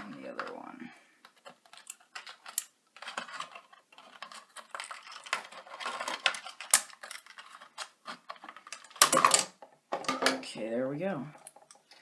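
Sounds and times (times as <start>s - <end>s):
packaging clicks and snips: 1.2s - 9.3s.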